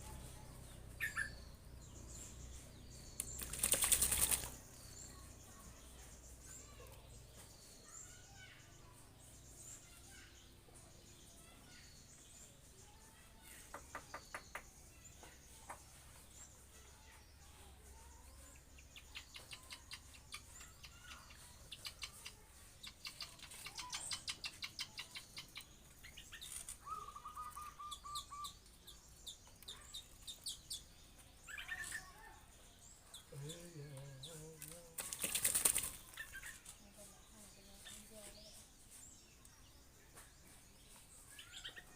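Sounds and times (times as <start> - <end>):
bird chirps: 0.0 - 41.9
bird trill: 1.0 - 1.5, 19.0 - 32.4
bird wings flapping: 3.2 - 4.6, 34.6 - 36.4.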